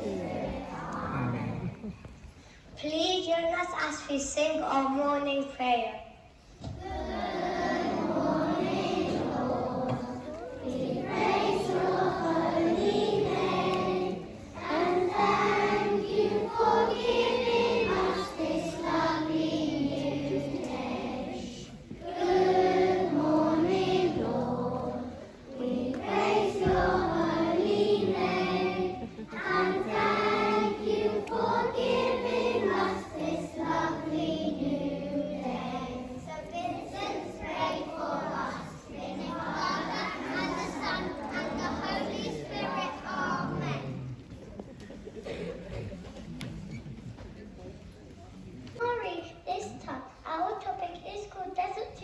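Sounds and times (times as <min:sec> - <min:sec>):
children singing a hymn: 0:00.0 - 0:01.9, 0:06.6 - 0:44.1.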